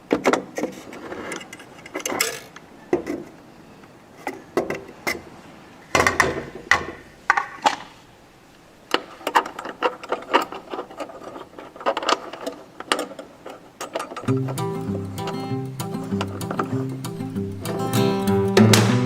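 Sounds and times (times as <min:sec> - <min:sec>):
tools and parts clanking: 0:00.0 - 0:03.5, 0:08.9 - 0:17.8.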